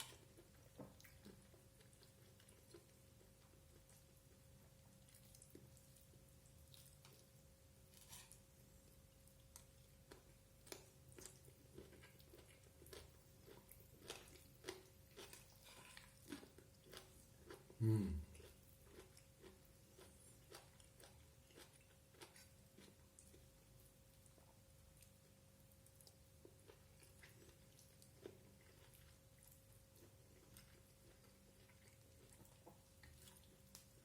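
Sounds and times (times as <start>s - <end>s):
person chewing and lip-smacking: 0.0s - 7.3s, 9.3s - 34.0s
short falling vocal sound: 17.8s - 18.2s.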